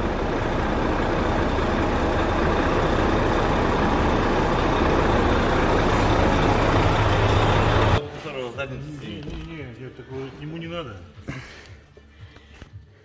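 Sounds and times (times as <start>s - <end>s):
diesel truck engine running: 0.0s - 8.0s.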